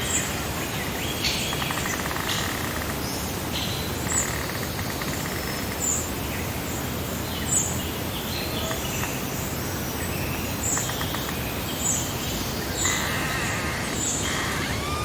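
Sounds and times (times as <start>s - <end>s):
background hiss: 0.0s - 15.0s
birds chirping: 0.0s - 15.0s
harsh bird calls: 10.2s - 15.0s.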